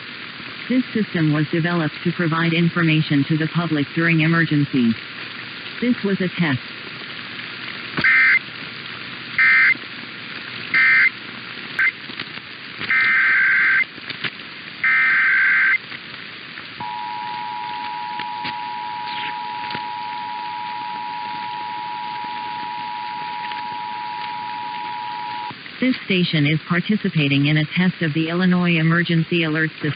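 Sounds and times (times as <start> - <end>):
data burst squawks: 8.0 - 8.4, 9.4 - 9.8, 10.8 - 11.1, 12.9 - 13.8, 14.8 - 15.8, 16.8 - 25.5
two-tone attention signal: 10.8 - 11.1, 12.9 - 13.8, 14.8 - 15.8, 16.8 - 25.5.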